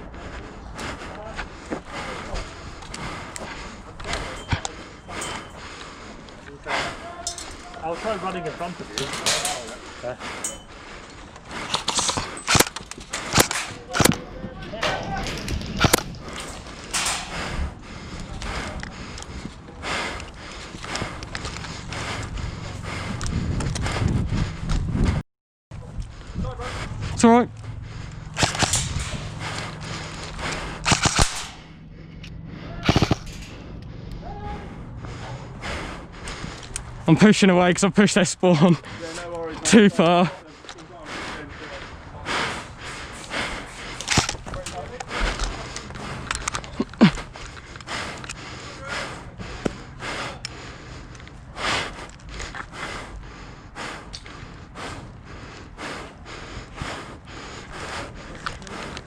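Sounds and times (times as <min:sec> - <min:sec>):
person breathing hard: 0:00.0 - 0:25.2, 0:25.8 - 0:59.0
airsoft guns firing bursts: 0:28.4 - 0:29.6, 0:30.6 - 0:31.6.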